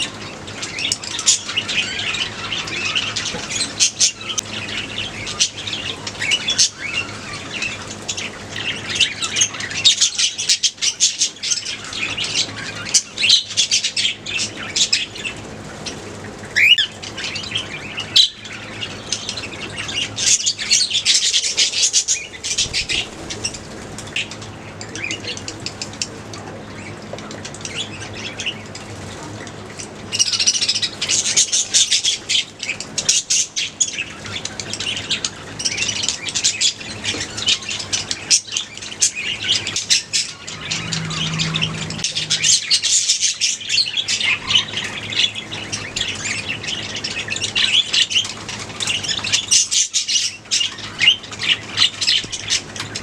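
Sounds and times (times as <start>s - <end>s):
budgerigars chirping and chattering: 0.2s - 26.0s, 29.8s - 43.0s
steady low hum: 39.1s - 43.7s.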